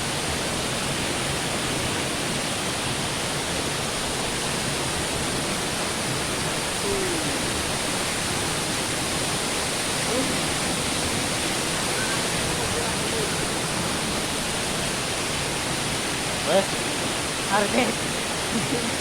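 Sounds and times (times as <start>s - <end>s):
waterfall rushing: 0.0s - 19.0s.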